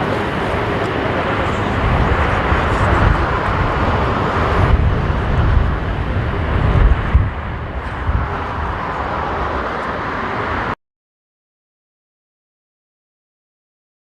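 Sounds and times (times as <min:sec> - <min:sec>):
jet engine noise: 0:00.0 - 0:10.8
wind buffeting microphone: 0:00.0 - 0:10.8.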